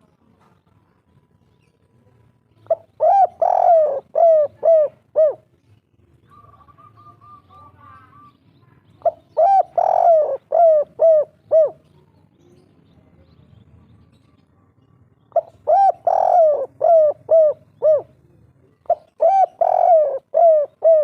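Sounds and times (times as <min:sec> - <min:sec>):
dove cooing: 0:02.6 - 0:05.5, 0:06.3 - 0:08.3, 0:09.0 - 0:11.9, 0:15.3 - 0:21.0.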